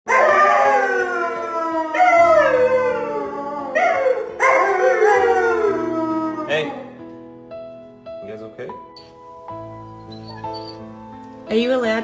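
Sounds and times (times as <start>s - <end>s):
puppy howling: 0.1s - 7.0s
background music with held chords: 0.1s - 12.0s.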